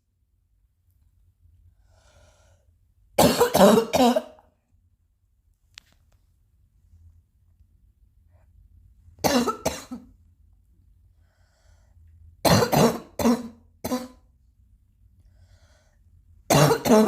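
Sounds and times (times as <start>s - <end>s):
faint breath: 1.7s - 2.8s, 11.1s - 12.2s, 15.2s - 16.2s
person coughing: 3.2s - 4.4s, 9.2s - 10.1s, 12.4s - 14.2s, 16.5s - 17.0s.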